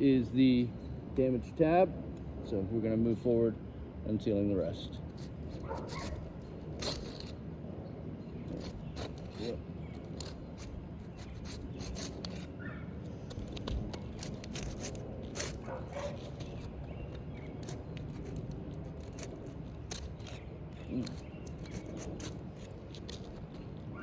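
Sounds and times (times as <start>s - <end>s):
putty knife scraping shingles: 4.9s - 7.4s, 8.4s - 24.0s
dog barking: 5.6s - 6.2s, 15.6s - 16.2s.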